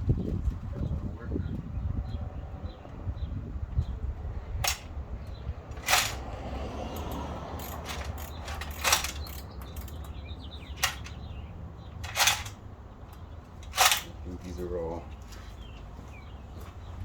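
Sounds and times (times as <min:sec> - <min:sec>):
hardware clacking: 0:05.7 - 0:06.3, 0:06.9 - 0:15.9.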